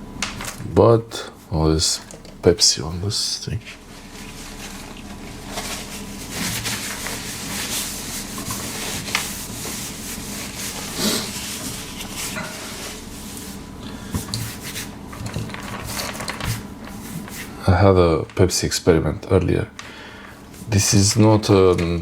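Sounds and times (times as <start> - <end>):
hands rubbing and rustling: 3.6 - 17.6.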